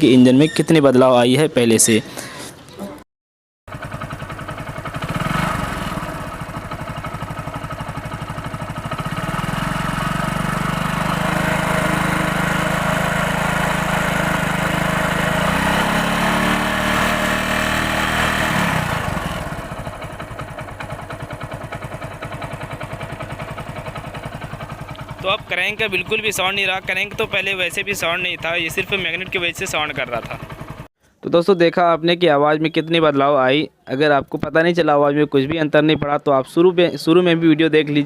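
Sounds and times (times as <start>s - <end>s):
motorcycle engine idling and revving: 3.7s - 30.9s.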